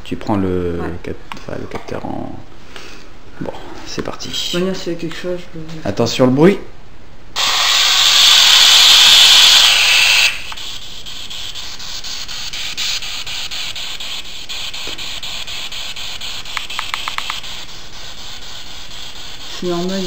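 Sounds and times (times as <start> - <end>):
radio static hissing: 7.4 - 17.9.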